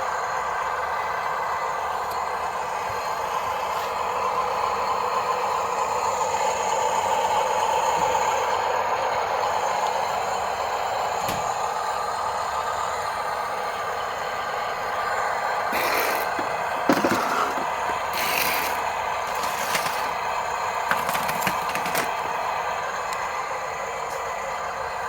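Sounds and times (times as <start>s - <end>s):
soil and stones scraping: 15.7s - 20.2s, 20.9s - 22.3s
small electric motors running: 15.7s - 22.6s.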